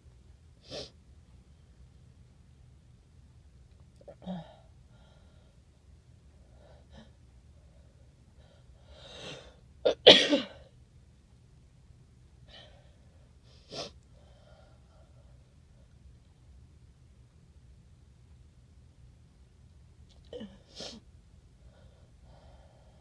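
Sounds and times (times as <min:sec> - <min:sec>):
person sneezing: 0:09.9 - 0:10.6.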